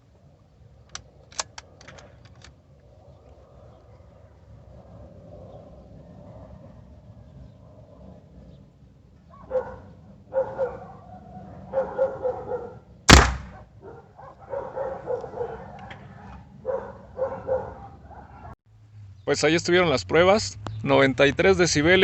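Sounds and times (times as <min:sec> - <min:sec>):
dog barking: 0:09.3 - 0:12.9, 0:13.5 - 0:18.6
air rifle shot: 0:13.1 - 0:13.6.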